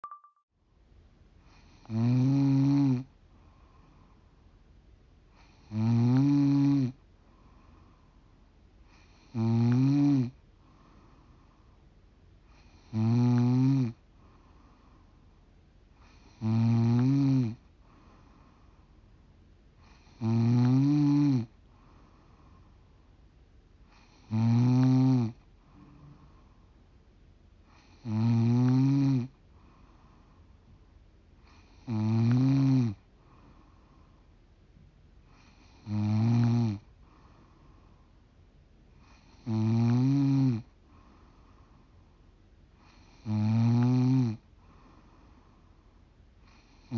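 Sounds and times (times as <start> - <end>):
woman snoring: 1.5 - 3.1, 5.4 - 7.0, 8.9 - 10.4, 12.6 - 14.0, 16.0 - 17.6, 19.8 - 21.5, 23.9 - 26.2, 27.7 - 29.4, 31.4 - 33.0, 35.3 - 36.8, 39.0 - 40.7, 42.8 - 44.4
soft breathing: 3.2 - 4.5, 7.1 - 9.4, 10.4 - 13.0, 14.0 - 16.4, 17.0 - 20.2, 21.5 - 23.2, 25.4 - 27.0, 29.3 - 35.9, 36.8 - 39.5, 40.6 - 43.3, 44.4 - 46.9.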